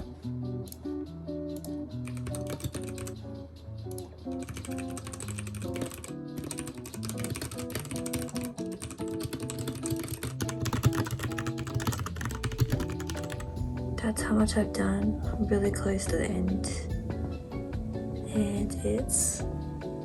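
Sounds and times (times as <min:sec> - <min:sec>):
soft lo-fi music: 0:00.0 - 0:20.0
computer keyboard typing: 0:01.6 - 0:03.2, 0:04.0 - 0:13.5.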